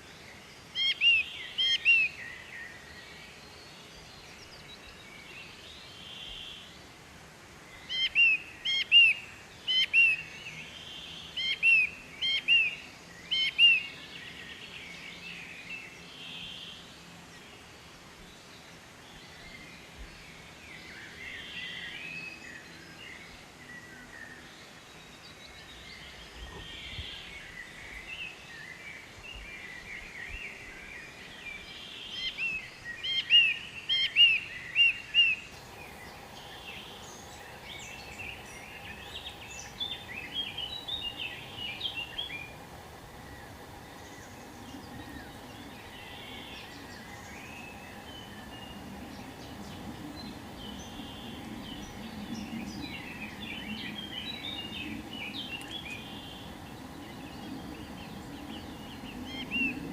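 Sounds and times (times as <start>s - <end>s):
background hiss: 0.0s - 59.9s
wild birds chirping: 0.0s - 59.9s
faint steady hum: 35.0s - 59.9s.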